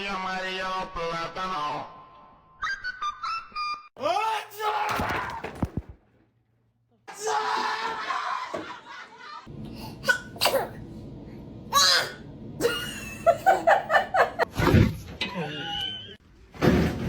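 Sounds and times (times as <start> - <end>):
people sneezing: 9.7 - 10.8.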